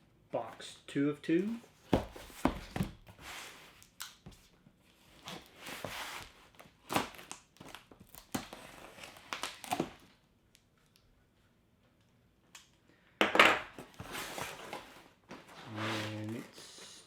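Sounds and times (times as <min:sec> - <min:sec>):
cardboard rustling: 0:01.4 - 0:10.1, 0:13.8 - 0:16.6
tape tearing: 0:06.2 - 0:10.2.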